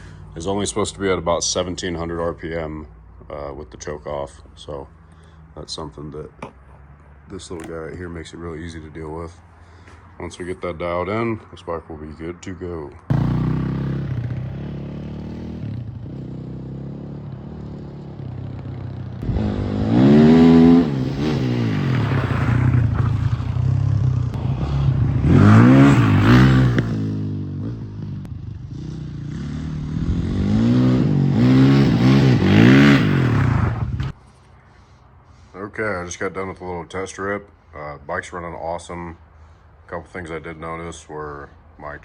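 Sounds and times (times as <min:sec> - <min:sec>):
dirt bike engine revving: 0:13.1 - 0:34.2.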